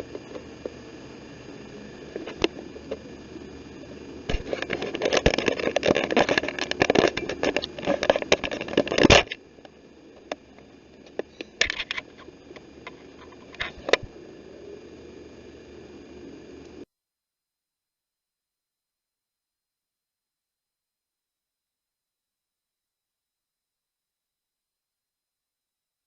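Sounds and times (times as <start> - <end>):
crackling and scraping with clicks: 0.0 - 1.4, 2.1 - 14.2.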